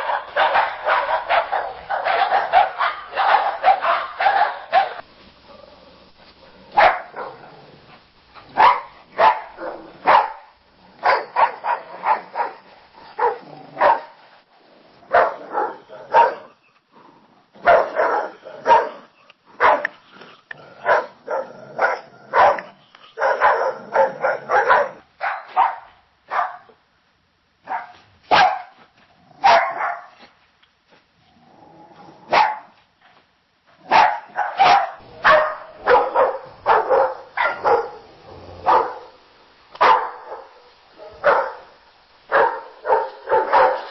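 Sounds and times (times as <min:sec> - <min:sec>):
dogs barking: 0:00.0 - 0:05.6, 0:06.7 - 0:07.5, 0:08.5 - 0:14.2, 0:15.1 - 0:16.5, 0:17.6 - 0:19.0, 0:19.6 - 0:20.0, 0:20.8 - 0:26.8, 0:27.6 - 0:28.8, 0:29.4 - 0:30.2, 0:32.3 - 0:32.7, 0:33.8 - 0:43.9.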